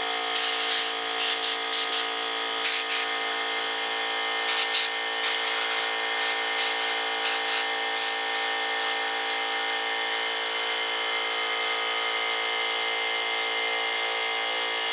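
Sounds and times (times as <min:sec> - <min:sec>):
air compressor humming: 0:00.0 - 0:10.8
short hisses of air: 0:00.4 - 0:02.0, 0:04.5 - 0:09.1.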